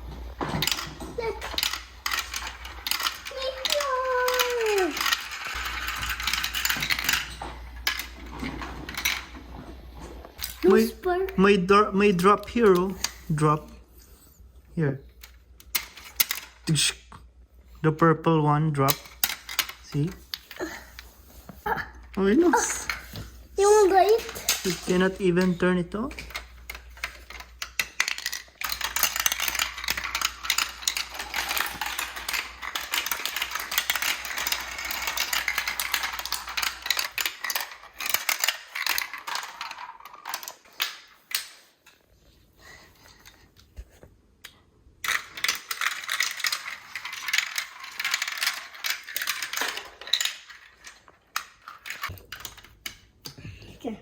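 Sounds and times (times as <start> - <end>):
marbles rattling down plastic track: 0.2 - 9.6, 18.7 - 21.1, 22.1 - 41.5, 45.0 - 53.0.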